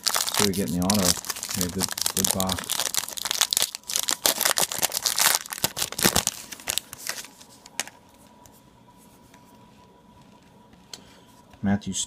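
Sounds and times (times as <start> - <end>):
plastic wrapper crinkling and tearing: 0.0 - 8.0.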